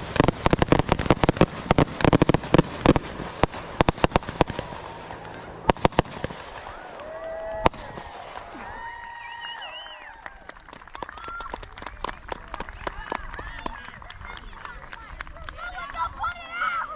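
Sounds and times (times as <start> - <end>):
fireworks bangs and crackling: 0.0 - 8.9.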